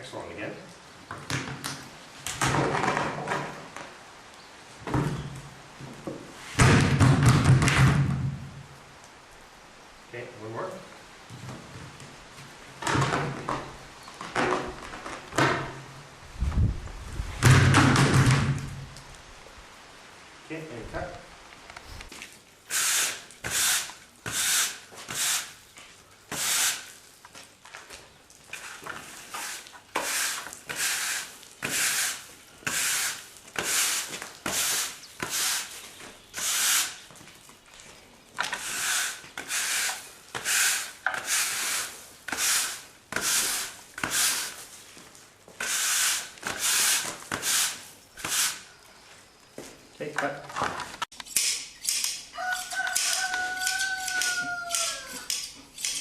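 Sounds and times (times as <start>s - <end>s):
rasping scraping strokes: 28.6s - 35.8s, 36.4s - 37.0s, 38.5s - 44.6s.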